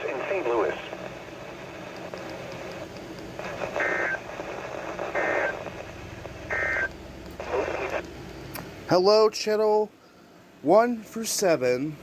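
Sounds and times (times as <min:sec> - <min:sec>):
radio hiss: 0:00.0 - 0:08.0
two-tone digital bursts: 0:03.8 - 0:04.2, 0:06.5 - 0:06.9.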